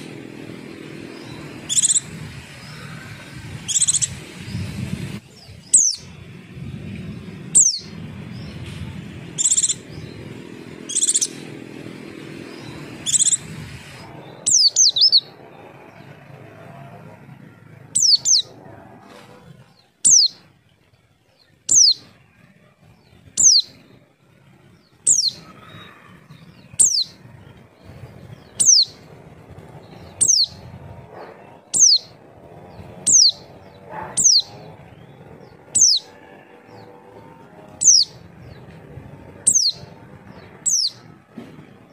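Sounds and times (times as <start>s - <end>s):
bird high downward sliding call: 1.2s - 4.2s, 9.4s - 10.0s, 10.9s - 11.5s, 12.6s - 15.4s, 18.0s - 19.4s, 25.1s - 27.2s, 28.5s - 29.0s, 30.1s - 30.6s, 31.4s - 32.2s, 33.0s - 34.7s, 35.7s - 36.2s, 36.8s - 38.3s, 39.5s - 39.9s.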